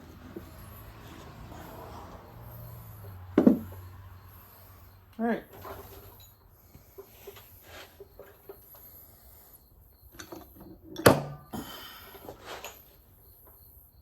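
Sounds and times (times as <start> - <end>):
rustle and scraping: 5.5 - 9.0, 12.2 - 13.6.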